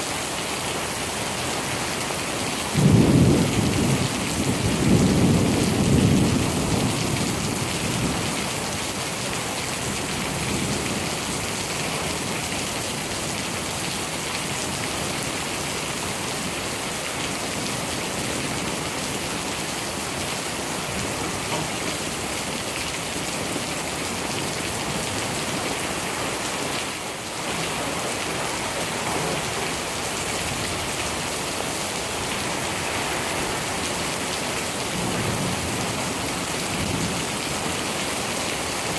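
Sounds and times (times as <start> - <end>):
steady rain falling: 0.0 - 38.9
low thunder rumble: 2.8 - 8.4.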